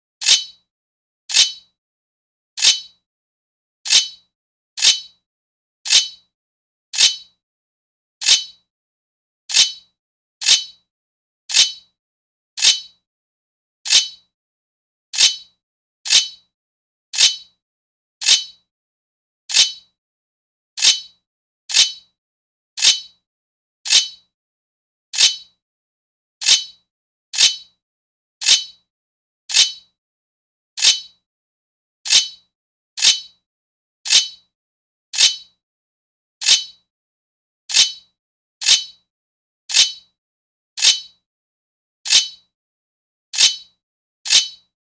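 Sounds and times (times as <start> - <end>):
sword blade scraping on metal: 0.2 - 0.6, 1.3 - 1.6, 2.6 - 2.9, 3.9 - 4.2, 4.8 - 5.1, 5.9 - 6.2, 7.0 - 7.3, 8.2 - 8.6, 9.5 - 9.8, 10.4 - 10.8, 11.5 - 11.8, 12.6 - 12.9, 13.9 - 14.2, 15.2 - 15.5, 16.1 - 16.4, 17.2 - 17.5, 18.2 - 18.6, 19.5 - 19.8, 20.8 - 21.1, 21.7 - 22.0, 22.8 - 23.1, 23.9 - 24.2, 25.2 - 25.5, 26.4 - 26.8, 27.4 - 27.7, 28.4 - 28.8, 29.5 - 29.8, 30.8 - 31.1, 32.1 - 32.4, 33.0 - 33.3, 34.1 - 34.4, 35.2 - 35.5, 36.4 - 36.8, 37.7 - 38.0, 38.6 - 39.0, 39.7 - 40.0, 40.8 - 41.1, 42.1 - 42.4, 43.4 - 43.7, 44.3 - 44.6.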